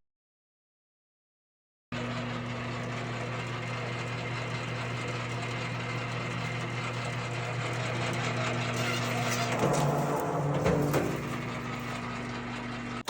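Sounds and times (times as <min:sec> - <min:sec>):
electric motor humming: 0:02.0 - 0:13.0
mechanical whir: 0:02.0 - 0:13.0.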